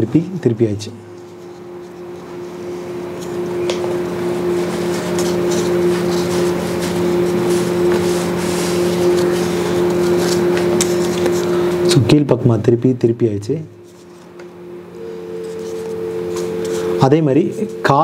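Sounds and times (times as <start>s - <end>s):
low hum: 0.9s - 12.4s, 13.6s - 18.0s
paper being creased and folded: 4.6s - 11.6s.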